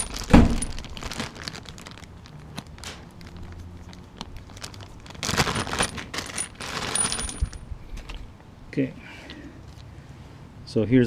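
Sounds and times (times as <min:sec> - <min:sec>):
metal parts clicking and rattling: 0:00.0 - 0:08.2.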